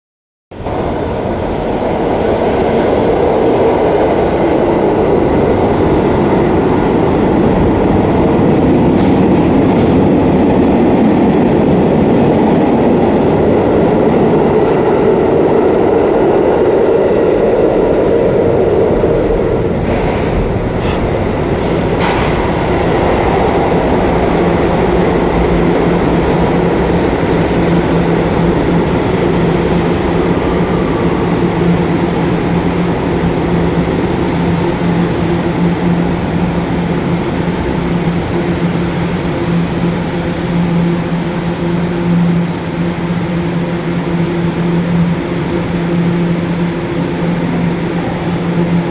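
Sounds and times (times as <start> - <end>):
train wheels rumbling on rails: 0.5 - 48.9
train wheel squeals: 21.6 - 22.3.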